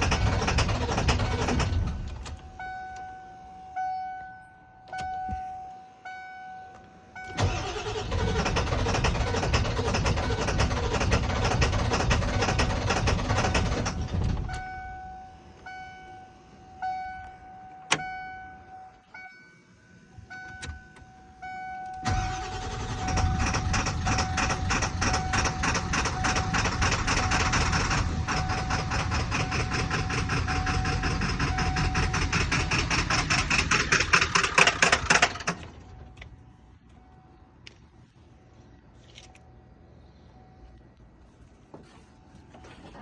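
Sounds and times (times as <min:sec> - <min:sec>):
diesel engine cranking: 0:00.0 - 0:02.6, 0:07.3 - 0:15.0, 0:22.0 - 0:36.4
dashboard warning chime beeping: 0:02.3 - 0:08.0, 0:14.3 - 0:23.4, 0:28.2 - 0:32.2.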